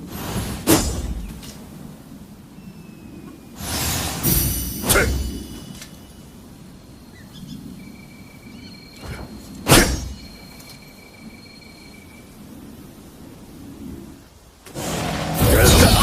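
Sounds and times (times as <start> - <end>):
faint high-pitched whine: 0.0 - 16.0
sword swishing through air: 0.2 - 1.4, 3.6 - 5.7, 9.1 - 10.2.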